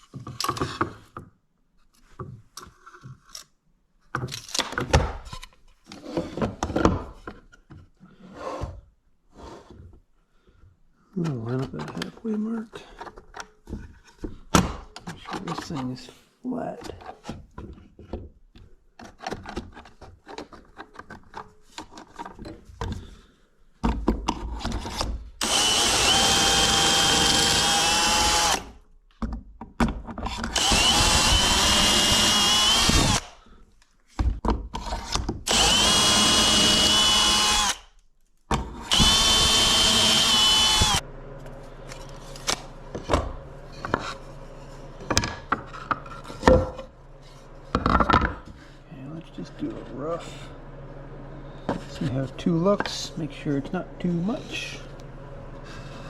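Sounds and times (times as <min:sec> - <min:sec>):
power drill whining: 0:25.4 - 0:28.8, 0:30.5 - 0:33.5, 0:35.4 - 0:38.0, 0:38.9 - 0:43.0
low steady hum: 0:39.0 - 0:56.0.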